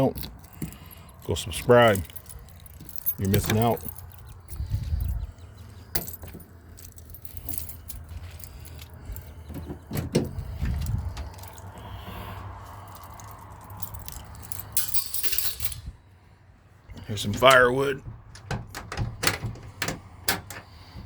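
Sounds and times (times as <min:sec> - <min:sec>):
keys jangling: 0:00.0 - 0:16.0, 0:17.3 - 0:21.0
dull low thumps: 0:09.0 - 0:11.6.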